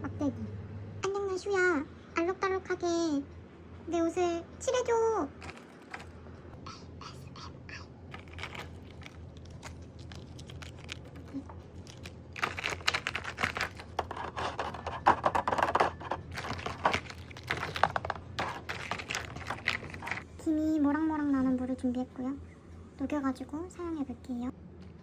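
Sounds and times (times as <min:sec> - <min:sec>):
plastic wrapping crinkling: 0:08.1 - 0:20.3.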